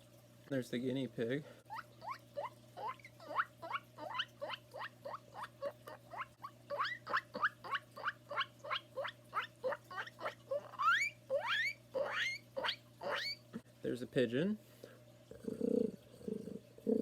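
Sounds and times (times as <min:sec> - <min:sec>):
man imitating guinea pig squeaks: 0:01.7 - 0:13.4.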